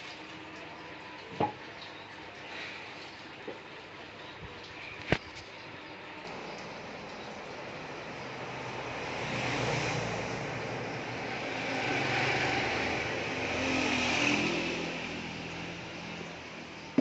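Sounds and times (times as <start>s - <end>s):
vehicles passing by: 6.2s - 17.0s.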